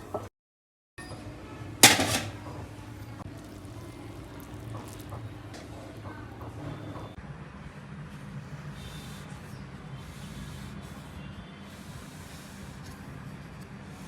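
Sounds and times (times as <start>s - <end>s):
low kitchen hum: 1.0s - 14.0s
metal pot clanking: 1.8s - 2.5s.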